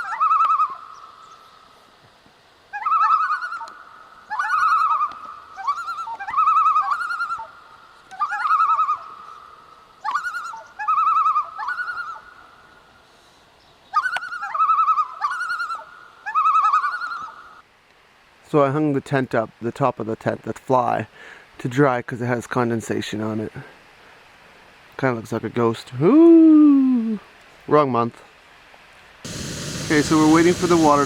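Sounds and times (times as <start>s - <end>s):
loons tremolo calling: 29.3s - 31.0s.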